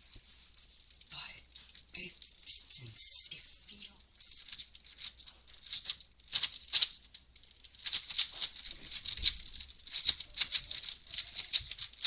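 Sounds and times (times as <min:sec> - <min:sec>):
puzzle cube layers clicking: 0:04.4 - 0:12.0.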